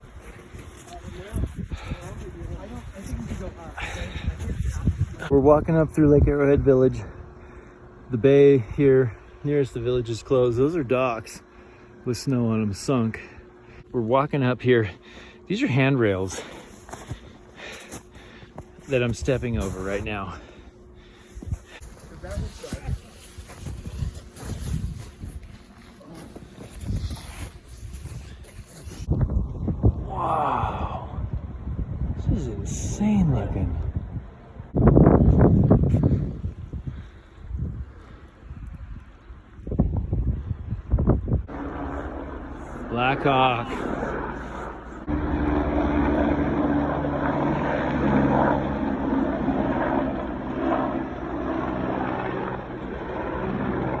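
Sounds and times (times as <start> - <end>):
wind buffeting microphone: 1.0 - 7.3, 21.3 - 25.7, 26.4 - 54.0
helicopter rotor thumping: 41.5 - 54.0.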